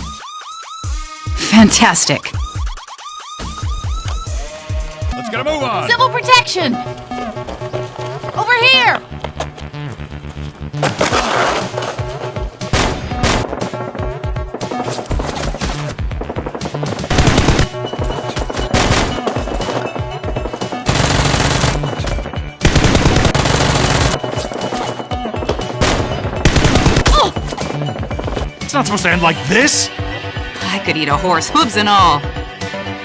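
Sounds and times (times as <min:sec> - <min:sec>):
background music: 0:00.0 - 0:33.0
automatic gunfire: 0:16.9 - 0:22.0, 0:22.6 - 0:24.2, 0:25.8 - 0:27.2.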